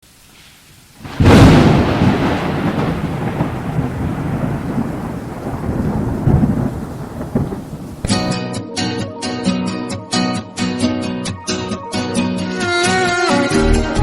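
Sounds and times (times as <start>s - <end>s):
steady heavy rain: 0.0s - 8.4s
rolling thunder rumbling: 1.0s - 8.4s
thunderclap: 1.0s - 8.4s.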